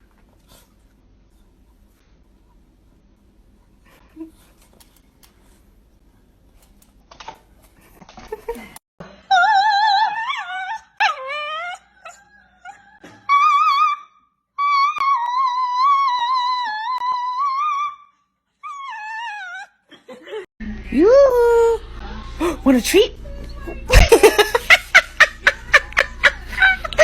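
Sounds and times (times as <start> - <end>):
dog howling: 9.3 - 19.7.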